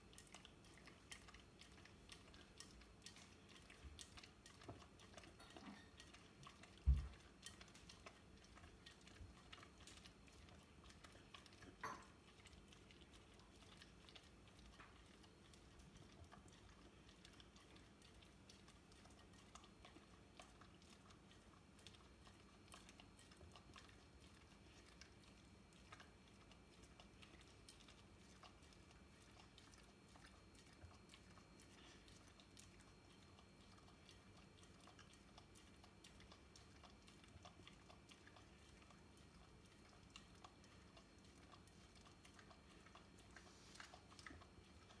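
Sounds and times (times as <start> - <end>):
dog licking and chewing: 0.0 - 45.0.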